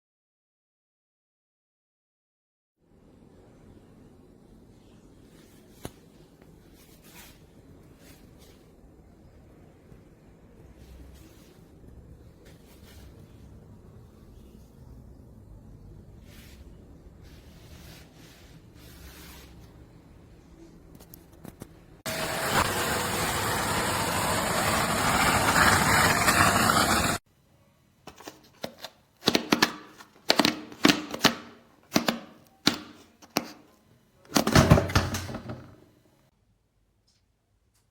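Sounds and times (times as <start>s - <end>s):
wet and dry vacuum cleaner running: 22.1s - 27.2s.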